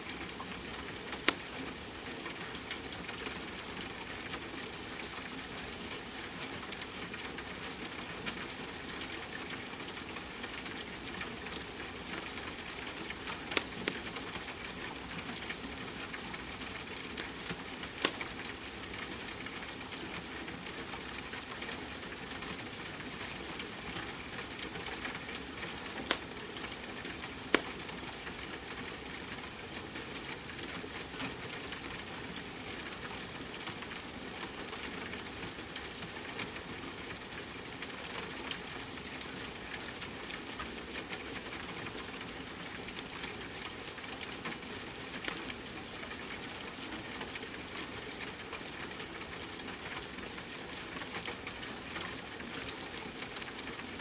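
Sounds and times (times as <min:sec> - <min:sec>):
wood fire crackling: 0:01.1 - 0:01.8, 0:11.8 - 0:14.7, 0:16.8 - 0:18.6, 0:24.5 - 0:28.2.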